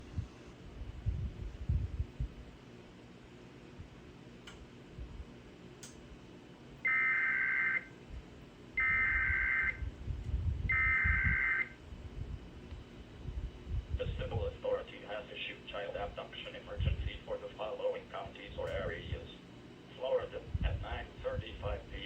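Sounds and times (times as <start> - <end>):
two-tone data signal bursts: 8.8 - 9.8, 10.7 - 11.8.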